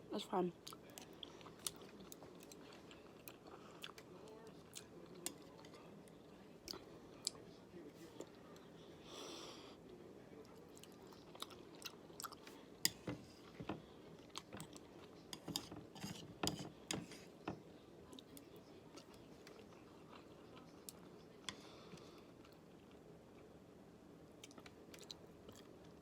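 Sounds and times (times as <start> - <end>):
soft breath: 8.8 - 9.8, 21.5 - 22.4.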